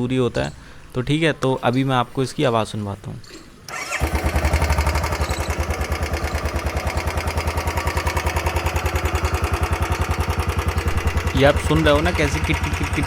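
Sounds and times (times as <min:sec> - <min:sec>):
motorcycle engine idling ticking: 0:04.0 - 0:13.0.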